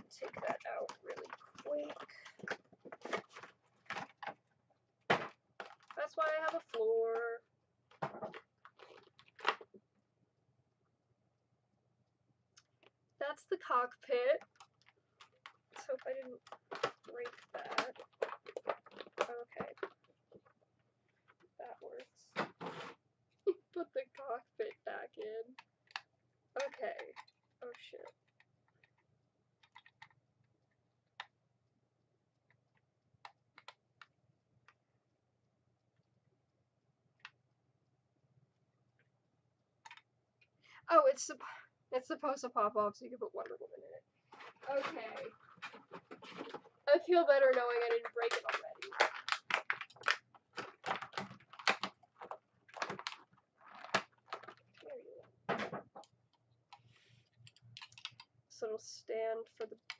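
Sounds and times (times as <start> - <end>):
plastic toy parts clicking: 57.4 - 58.3.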